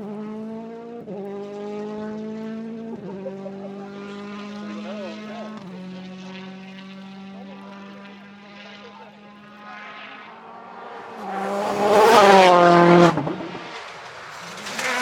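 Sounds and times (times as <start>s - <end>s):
rally car engine passing by: 0.0s - 15.0s.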